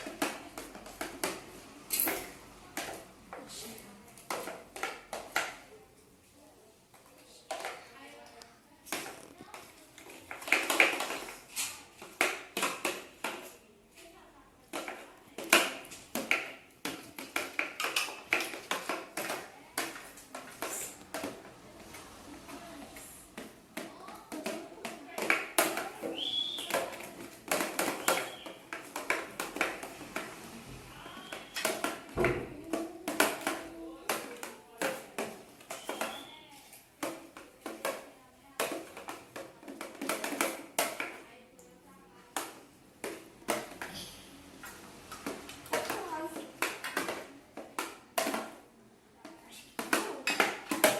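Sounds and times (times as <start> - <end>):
objects tapping on hard surface: 0.0 - 3.4, 4.1 - 5.6, 8.8 - 13.6, 14.6 - 22.0, 22.8 - 41.7, 42.3 - 50.9.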